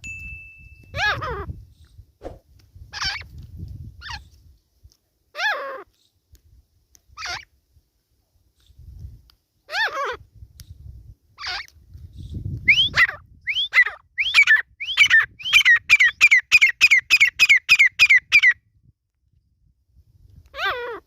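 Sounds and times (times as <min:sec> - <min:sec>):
francolin whistled calls: 0:12.7 - 0:18.6.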